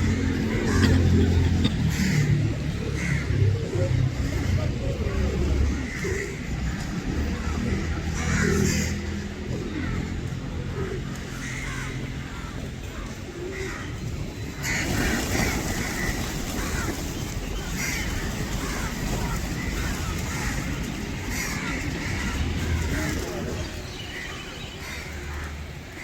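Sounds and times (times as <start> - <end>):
flock of birds calling: 0.0 - 26.0.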